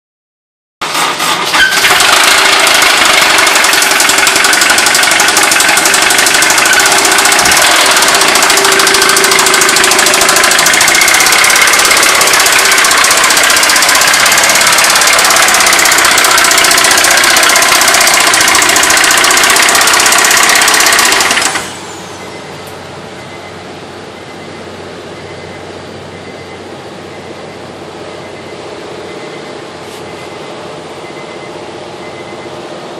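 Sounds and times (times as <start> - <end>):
steady background noise: 21.8 - 32.9.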